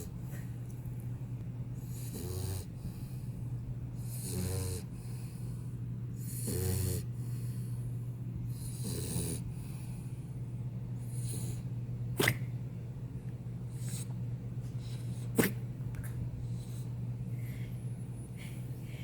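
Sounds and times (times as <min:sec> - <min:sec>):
steady low hum: 0:00.0 - 0:19.0
puppy snoring: 0:01.8 - 0:03.4, 0:04.0 - 0:07.8, 0:08.4 - 0:10.0, 0:11.0 - 0:12.5, 0:13.7 - 0:14.2.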